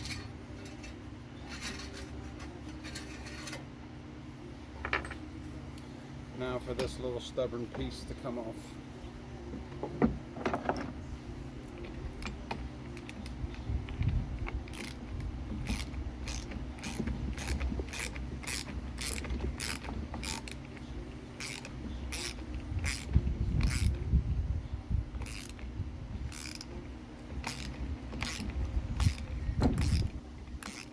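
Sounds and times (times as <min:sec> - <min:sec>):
steady low hum: 0:00.0 - 0:30.9
ratchet wrench clicking: 0:13.0 - 0:20.8, 0:21.4 - 0:24.0, 0:25.2 - 0:25.7, 0:26.3 - 0:26.8, 0:27.4 - 0:30.9.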